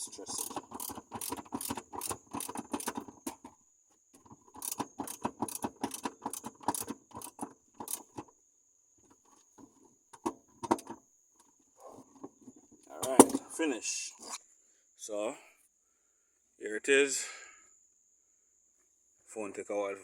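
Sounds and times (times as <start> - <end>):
gear shifter clicks and rattles: 0.0 - 3.6, 4.2 - 8.3, 9.1 - 11.0.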